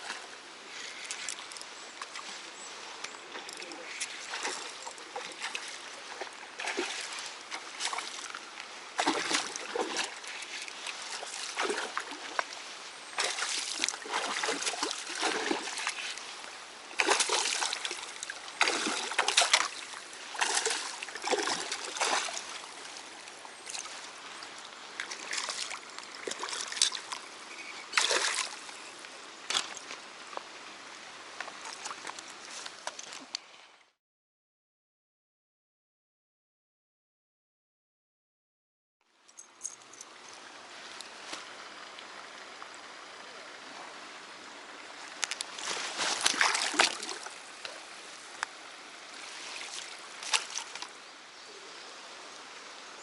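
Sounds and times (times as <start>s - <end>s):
water splashing and sloshing: 0.0s - 33.4s, 44.7s - 51.2s.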